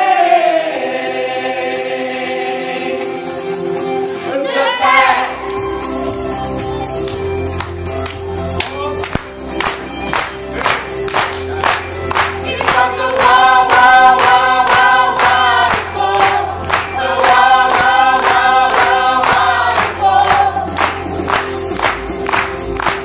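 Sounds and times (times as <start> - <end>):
crowd singing along: 0.0 - 5.8, 12.4 - 21.4
live band music with steady beat: 2.4 - 23.0.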